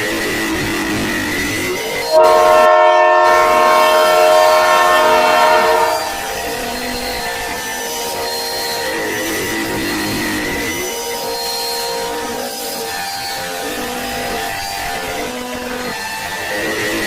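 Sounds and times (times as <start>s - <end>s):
horn blast chord: 2.1s - 7.0s.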